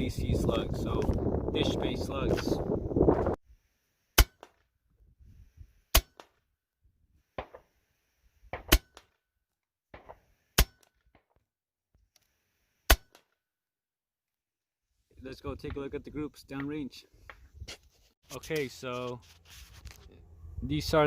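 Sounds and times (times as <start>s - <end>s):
air rifle shots: 8.5s - 9.0s.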